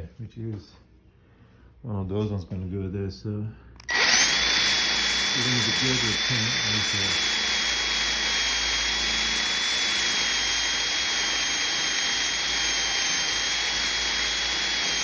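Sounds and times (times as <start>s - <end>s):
power sander running: 3.8s - 15.0s.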